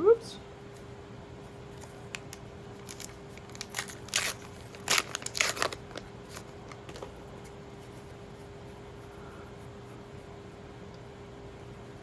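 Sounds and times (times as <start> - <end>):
faint steady hum: 0.0 - 12.0
pack wrapping crinkling: 2.1 - 7.1.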